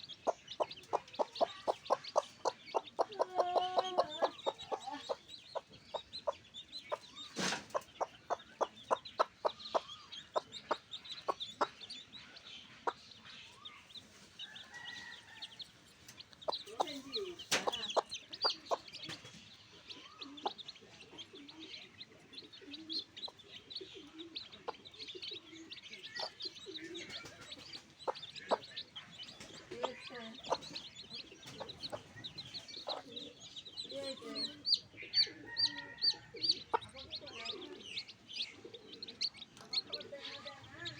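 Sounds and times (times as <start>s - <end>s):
chickens clucking: 0.0s - 40.9s.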